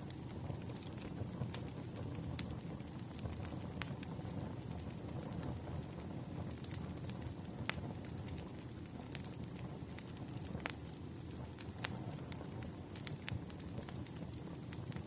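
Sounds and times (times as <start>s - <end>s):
burning logs crackling and popping: 0.0s - 15.0s
low rumble of flames: 0.0s - 15.0s.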